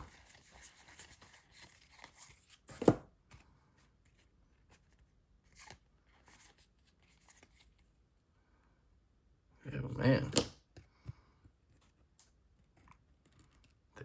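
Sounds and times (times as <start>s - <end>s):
card pack rustling: 0.0s - 3.4s, 4.1s - 7.8s
cards rustling and clicking: 0.0s - 7.9s, 10.2s - 14.0s.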